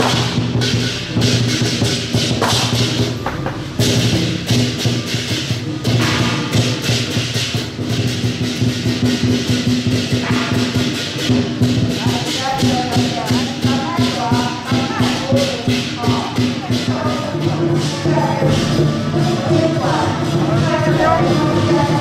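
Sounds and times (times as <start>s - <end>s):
fast percussion strikes: 0.0s - 22.0s.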